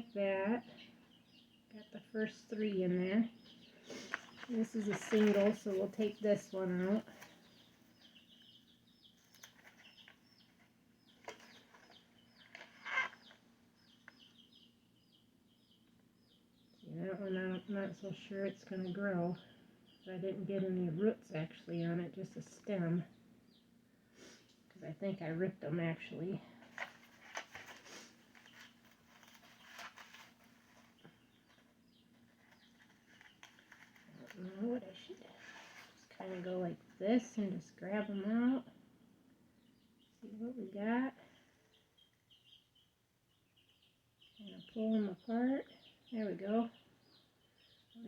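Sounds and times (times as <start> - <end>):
low steady hum: 0.0 - 48.0
small bird chirping: 0.0 - 48.0
hands rustling in potting soil: 3.8 - 7.7, 26.6 - 36.7.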